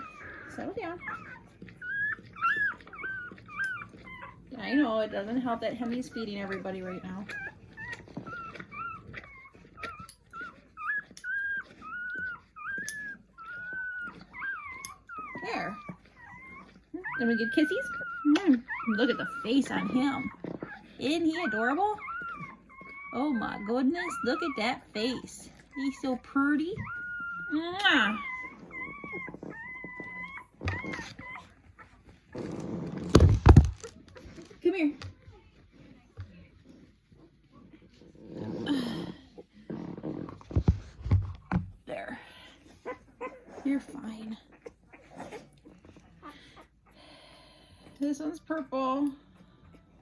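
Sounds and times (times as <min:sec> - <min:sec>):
puppy whining and squealing: 0:00.0 - 0:41.6, 0:42.4 - 0:50.0
rustling: 0:00.0 - 0:50.0.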